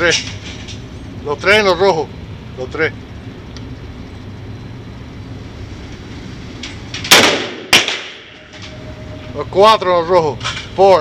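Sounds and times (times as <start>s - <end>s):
low hum: 0.0s - 11.0s
rifle shots: 7.1s - 8.4s.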